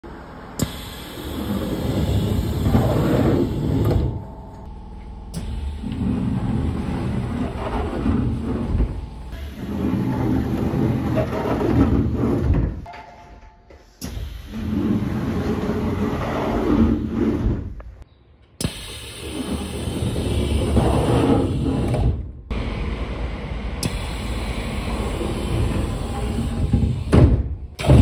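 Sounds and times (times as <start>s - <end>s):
train doors opening and closing: 0.5s - 4.7s, 5.3s - 16.5s, 23.8s - 28.0s.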